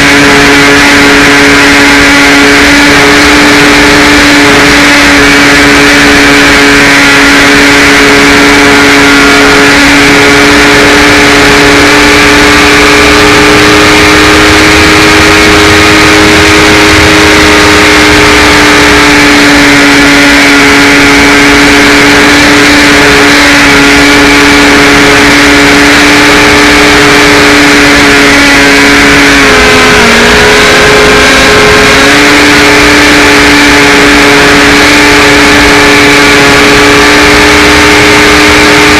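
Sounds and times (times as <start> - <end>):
electric motor and propeller whining: 0.0 - 38.9
wind noise: 0.0 - 38.9.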